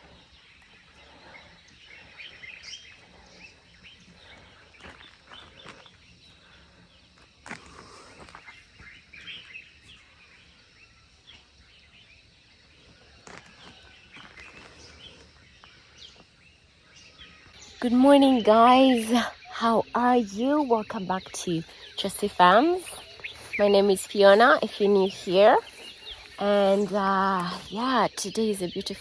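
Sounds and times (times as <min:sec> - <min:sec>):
birds chirping: 0:00.0 - 0:07.2, 0:08.3 - 0:29.0.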